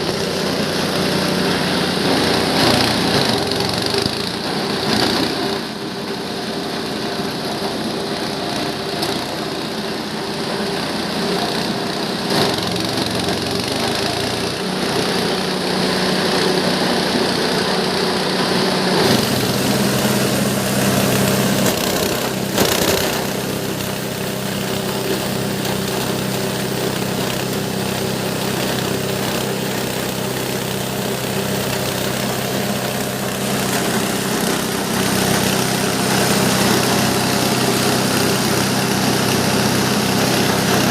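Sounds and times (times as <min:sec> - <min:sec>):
grinder machine running: 0:00.0 - 0:40.9.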